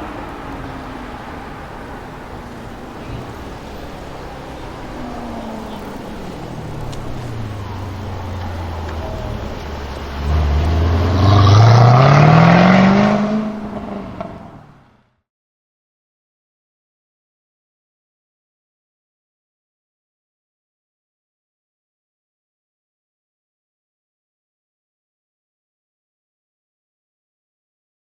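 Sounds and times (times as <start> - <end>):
car engine accelerating hard: 0.0 - 15.0.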